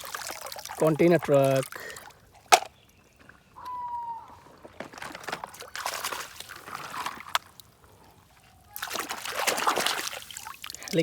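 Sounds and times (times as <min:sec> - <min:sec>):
water sloshing and trickling: 0:00.0 - 0:03.6, 0:04.3 - 0:11.0.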